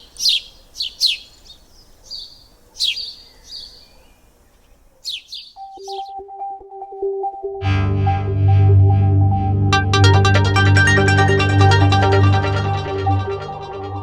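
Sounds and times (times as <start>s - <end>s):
small birds chirping: 0.0s - 6.2s
electronic tune: 5.6s - 14.0s.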